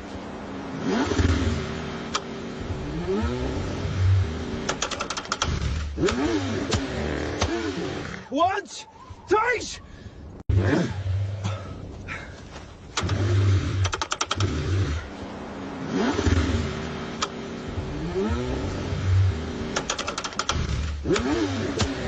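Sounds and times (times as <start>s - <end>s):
car engine cranking: 0.8s - 8.3s, 12.8s - 15.2s, 15.8s - 22.0s
rapid clicks: 4.6s - 7.6s, 12.9s - 14.6s, 19.7s - 22.0s.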